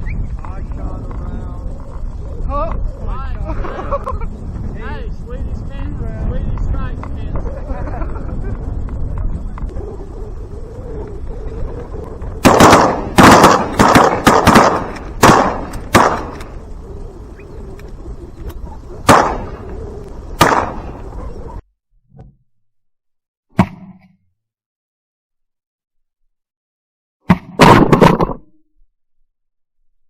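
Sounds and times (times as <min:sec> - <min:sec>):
sharp crack: 0:12.2 - 0:16.8, 0:17.7 - 0:21.3, 0:23.6 - 0:24.1, 0:27.3 - 0:28.4
shotgun blasts: 0:12.4 - 0:16.5, 0:19.0 - 0:19.6, 0:20.4 - 0:21.0, 0:23.6 - 0:24.0, 0:27.3 - 0:28.4.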